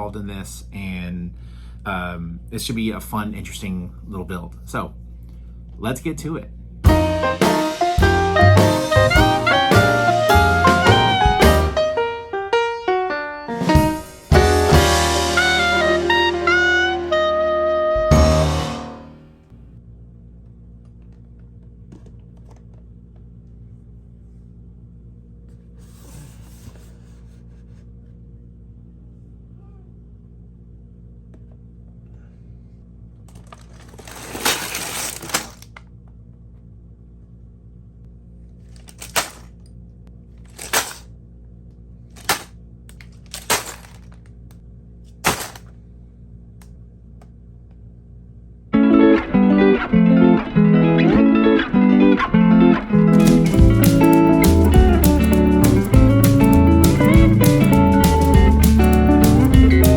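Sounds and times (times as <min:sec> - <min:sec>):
low electrical hum: 0:00.0 - 0:07.2, 0:19.1 - 0:48.8
plastic pieces spilling: 0:33.3 - 0:35.8, 0:38.7 - 0:39.5, 0:40.5 - 0:41.0, 0:42.2 - 0:44.3, 0:45.2 - 0:45.7.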